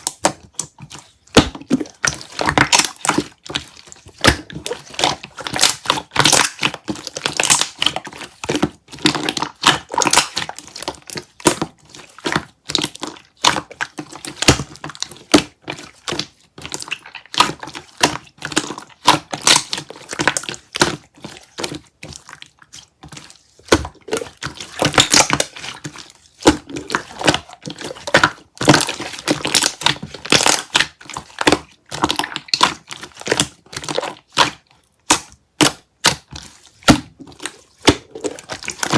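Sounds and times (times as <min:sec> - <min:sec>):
slime crackling and popping: 0:00.0 - 0:38.9
slime squishing: 0:00.0 - 0:38.9.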